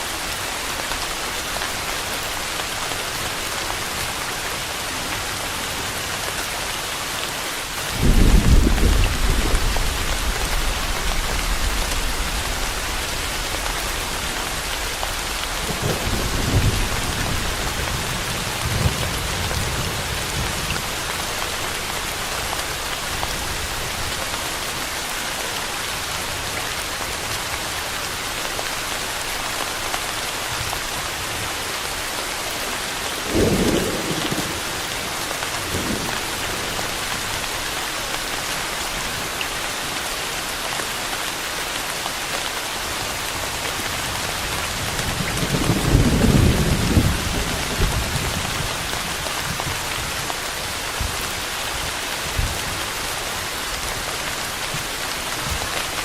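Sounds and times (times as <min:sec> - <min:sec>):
steady rain hiss: 0:00.0 - 0:56.0
thunder rumbling: 0:07.9 - 0:22.2, 0:44.7 - 0:49.8.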